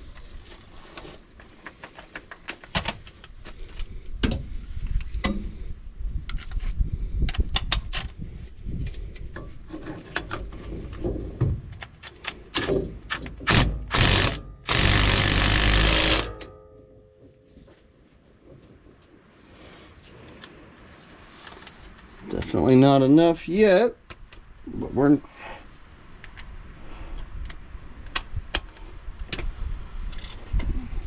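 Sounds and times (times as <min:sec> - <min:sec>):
air impact wrench bursts: 0:13.4 - 0:16.4.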